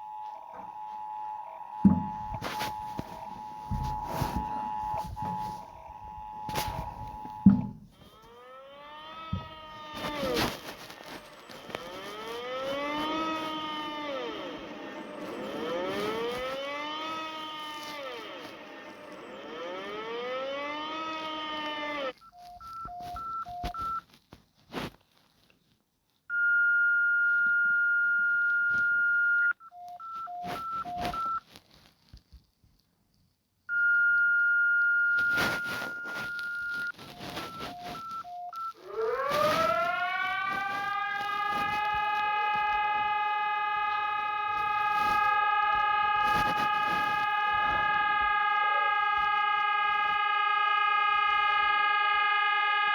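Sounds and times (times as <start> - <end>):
long steady tones: 0.0 - 23.4, 33.7 - 52.9
siren winding: 0.0 - 23.9, 35.0 - 52.9.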